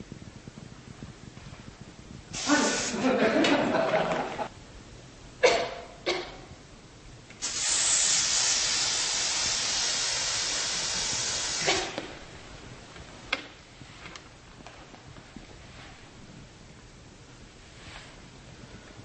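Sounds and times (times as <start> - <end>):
steady hiss: 0.0 - 19.0.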